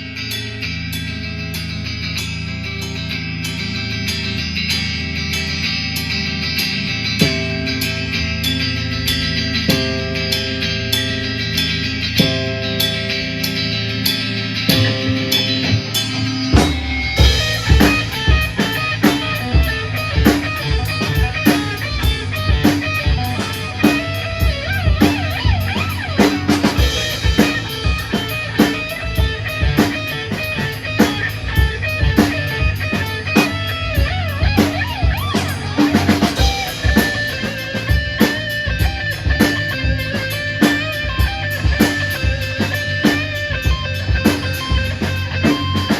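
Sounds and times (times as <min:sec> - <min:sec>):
rock band playing: 0:00.0 - 0:45.9
drum kit kick and snare: 0:14.7 - 0:45.9.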